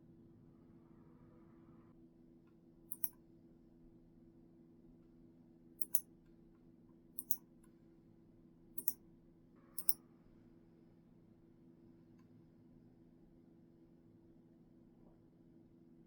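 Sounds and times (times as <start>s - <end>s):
mouse button double clicks: 2.9s - 3.1s, 5.8s - 6.0s, 7.2s - 7.4s.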